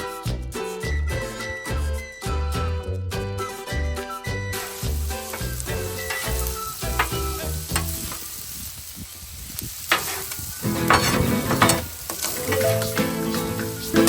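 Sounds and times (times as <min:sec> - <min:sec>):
meat patties sizzling on griddle: 0:04.5 - 0:14.0
metal spatula scraping: 0:04.6 - 0:08.2, 0:09.9 - 0:14.0.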